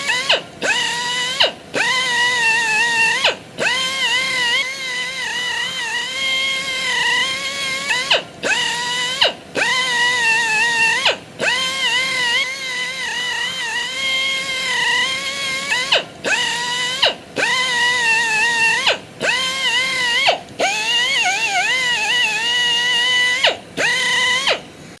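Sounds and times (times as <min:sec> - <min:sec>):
angle grinder whining: 0:00.0 - 0:25.0.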